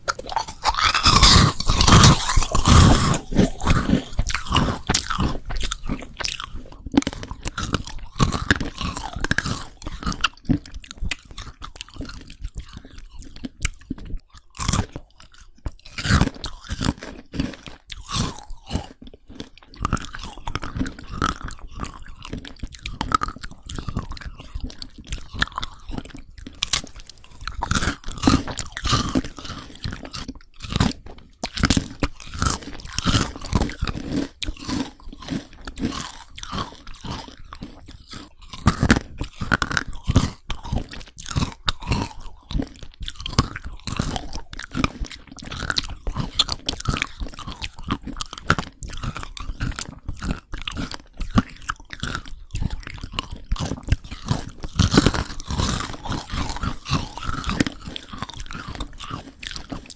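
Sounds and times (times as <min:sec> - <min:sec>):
crunchy food being chewed: 0:00.0 - 0:59.9.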